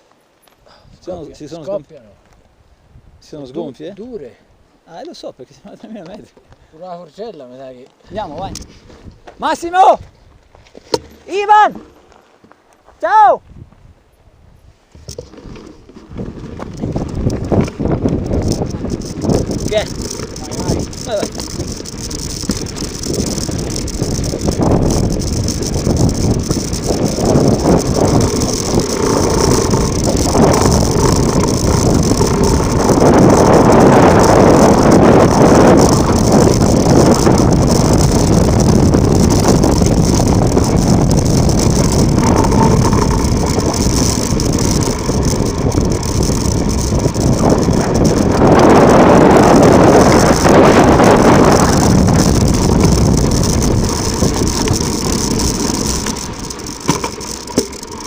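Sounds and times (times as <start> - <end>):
bike tyre noise on loose ground: 0.0 - 58.0
wind rushing: 16.1 - 56.9.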